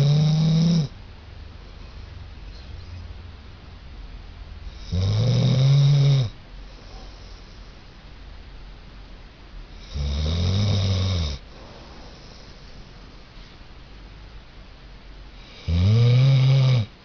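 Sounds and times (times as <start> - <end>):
dog snoring: 0.0 - 0.9, 4.7 - 7.7, 9.7 - 12.7, 15.4 - 16.9.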